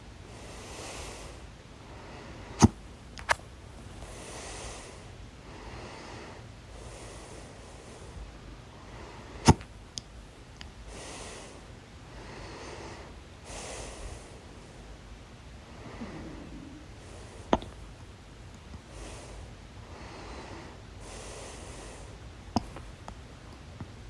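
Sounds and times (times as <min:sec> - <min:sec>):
soft breathing: 0:00.3 - 0:09.5, 0:10.8 - 0:23.1
small click: 0:02.6 - 0:03.4
person hiccupping: 0:15.9 - 0:17.8.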